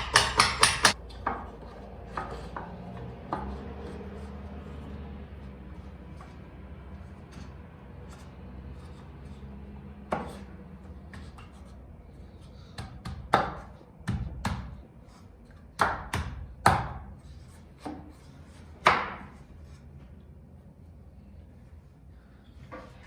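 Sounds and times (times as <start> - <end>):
sharp blows on wood: 0.0 - 1.0.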